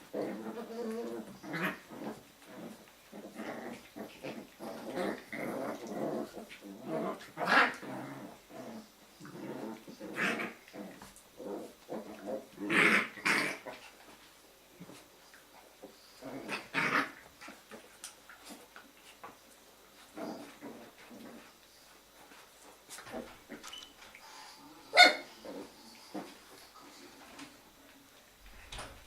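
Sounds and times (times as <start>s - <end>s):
puppies growling in play: 0.0s - 29.0s
puppy yelps: 24.9s - 25.3s.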